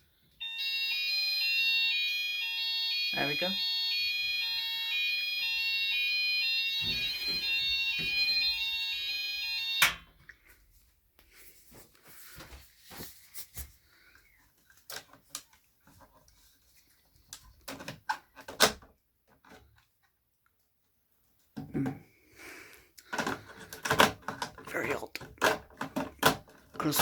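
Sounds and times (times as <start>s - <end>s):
plastic clicks and knocks: 17.3s - 19.8s, 23.0s - 26.9s.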